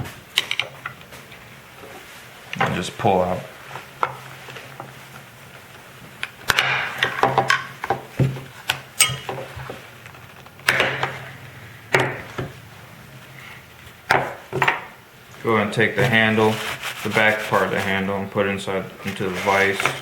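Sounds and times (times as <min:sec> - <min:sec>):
steady low hum: 0:08.4 - 0:19.1.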